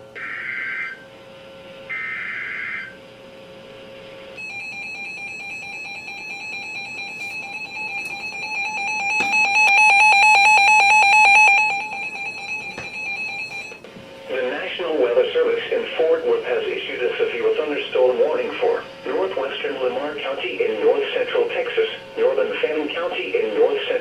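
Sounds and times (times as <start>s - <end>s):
high-pitched attention tone: 4.4s - 13.8s.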